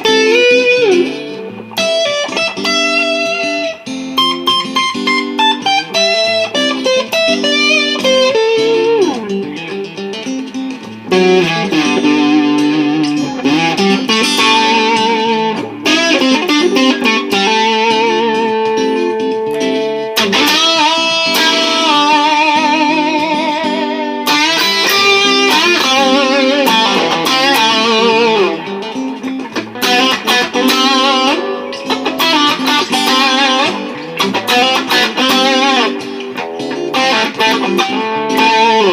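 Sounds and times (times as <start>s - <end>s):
acoustic guitar rhythm: 0.0s - 38.9s
electric guitar solo: 0.0s - 38.9s.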